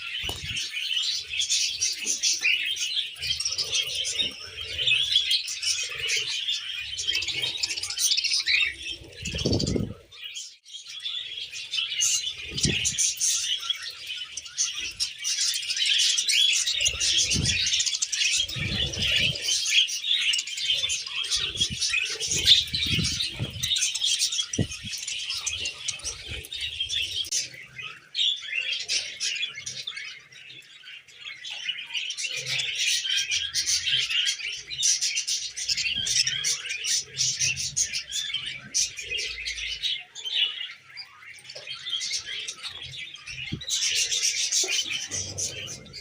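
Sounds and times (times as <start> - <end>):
budgies chirping and warbling: 0.0 - 46.0.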